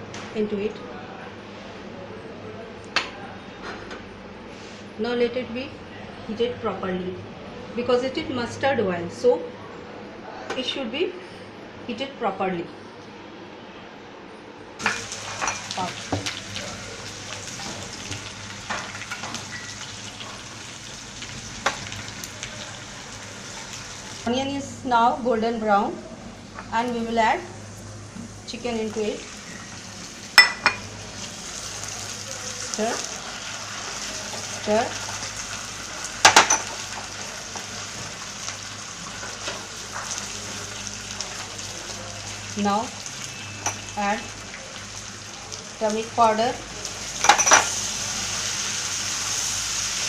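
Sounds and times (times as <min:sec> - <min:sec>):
onions sizzling in oil: 0:14.8 - 0:24.3, 0:26.7 - 0:50.0.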